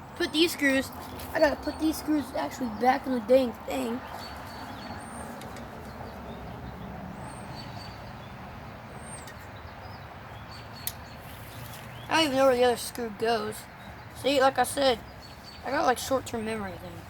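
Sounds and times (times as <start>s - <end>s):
sharp click: 10.8s - 11.0s.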